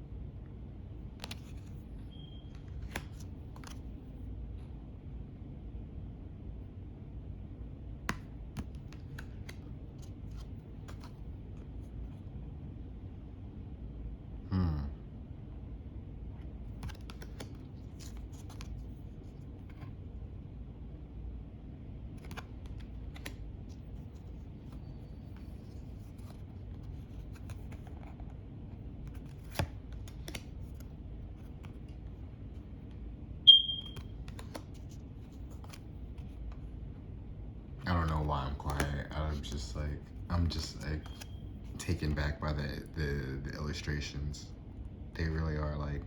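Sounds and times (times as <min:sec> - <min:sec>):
low room hum: 0:00.0 - 0:46.0
cards clicking and tapping: 0:01.1 - 0:04.0, 0:08.0 - 0:11.8, 0:16.7 - 0:19.9, 0:22.2 - 0:28.3, 0:29.0 - 0:32.1, 0:33.8 - 0:36.7, 0:37.9 - 0:39.8, 0:40.4 - 0:42.2
short high beep: 0:33.5 - 0:34.0.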